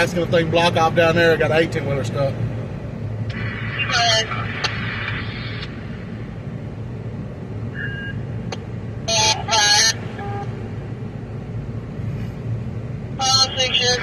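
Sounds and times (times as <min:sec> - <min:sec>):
truck engine hum: 0:00.0 - 0:14.0
garbled two-way radio voice: 0:03.7 - 0:04.6, 0:09.1 - 0:10.0, 0:13.2 - 0:14.0
short electronic beep: 0:07.8 - 0:08.2.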